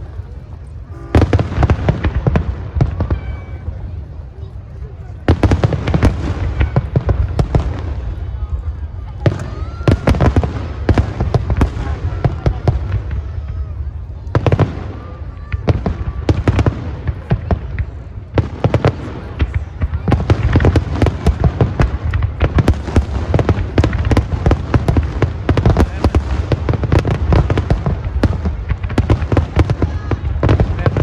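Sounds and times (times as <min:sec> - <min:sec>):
fireworks bangs and crackles: 0:00.0 - 0:31.0.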